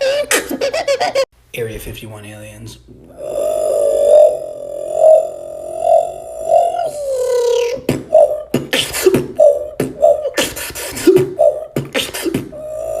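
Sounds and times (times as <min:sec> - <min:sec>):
vocal beatboxing: 0:03.1 - 0:13.0.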